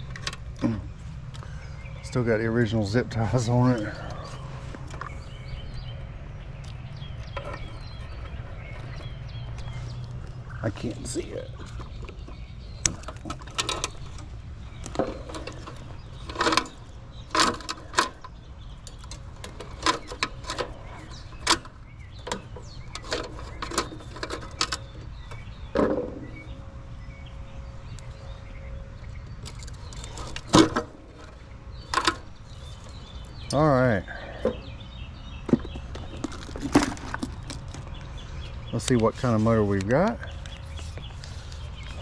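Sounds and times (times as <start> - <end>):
steady low hum: 0.0 - 42.0
tools clicking and rattling: 11.0 - 26.4, 29.4 - 33.5.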